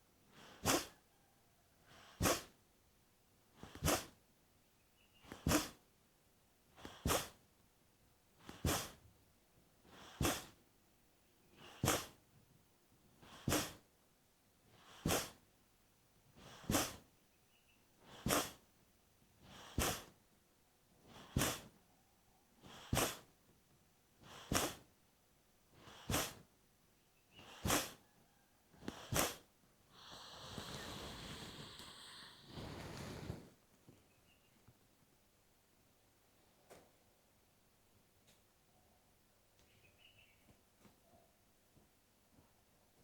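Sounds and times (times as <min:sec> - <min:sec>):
forceful nasal exhalations: 0:00.3 - 0:01.0, 0:01.9 - 0:02.6, 0:03.6 - 0:04.2, 0:05.3 - 0:05.8, 0:06.8 - 0:07.4, 0:08.4 - 0:09.0, 0:09.9 - 0:10.6, 0:11.6 - 0:12.2, 0:13.2 - 0:13.8, 0:14.8 - 0:15.4, 0:16.4 - 0:17.1, 0:18.0 - 0:18.7, 0:19.4 - 0:20.2, 0:21.1 - 0:21.8, 0:22.6 - 0:23.4, 0:24.2 - 0:24.9, 0:25.8 - 0:26.5, 0:27.3 - 0:28.1, 0:28.8 - 0:33.6
soft inhale: 0:00.3 - 0:02.6, 0:19.4 - 0:20.2, 0:21.0 - 0:21.7, 0:22.6 - 0:23.3, 0:24.2 - 0:24.9, 0:25.8 - 0:26.5, 0:27.3 - 0:34.4.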